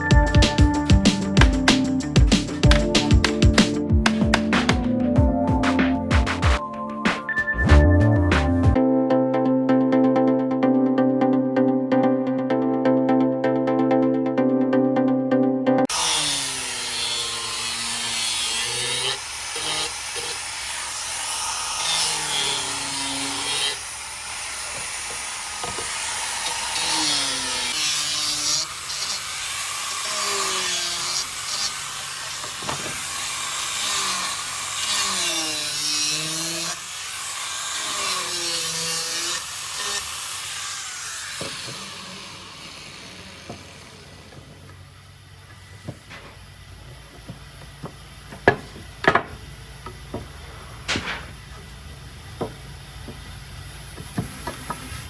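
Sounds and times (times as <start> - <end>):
power tool cutting wood: 0.0 - 5.1, 15.9 - 55.0.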